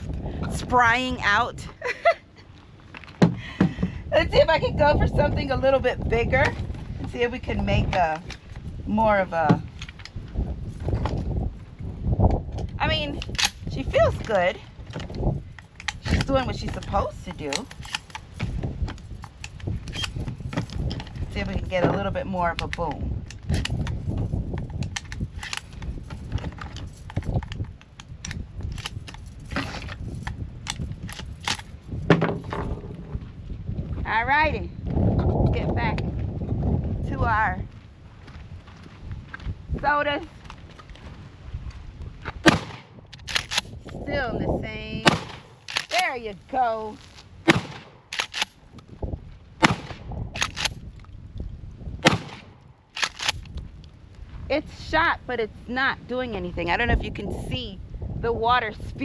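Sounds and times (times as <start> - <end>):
shotgun shells clicking into magazine: 13.2 - 13.7, 17.4 - 21.0, 22.6 - 31.8, 43.2 - 44.0, 45.6 - 46.1, 48.1 - 48.6, 50.4 - 50.9, 52.9 - 53.6
small sharp cracks: 13.2 - 13.7, 17.3 - 21.0, 22.6 - 32.0, 42.4 - 44.0, 45.1 - 46.2, 46.9 - 48.9, 49.6 - 51.1, 52.0 - 54.0
shotgun shots: 42.4 - 43.7, 45.0 - 46.0, 47.4 - 48.5, 49.6 - 50.7, 52.0 - 53.4.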